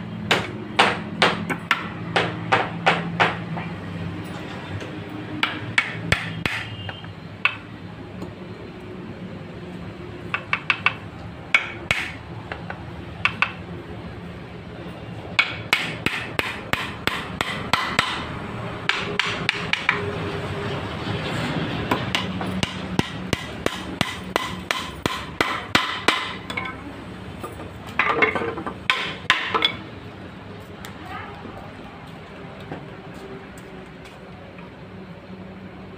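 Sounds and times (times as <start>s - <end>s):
hammer striking wood: 0.3s - 3.7s, 5.4s - 6.8s, 10.3s - 12.6s, 15.4s - 18.3s, 18.9s - 20.0s, 21.9s - 26.5s, 28.0s - 29.8s.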